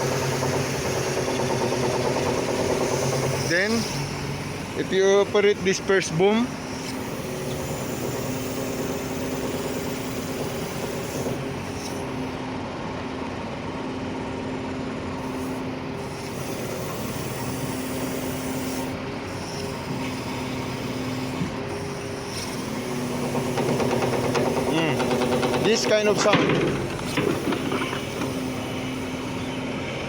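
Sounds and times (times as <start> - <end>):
hydraulic pump hum: 0.0 - 13.8, 15.0 - 30.0
dense fast rattle: 23.4 - 28.5.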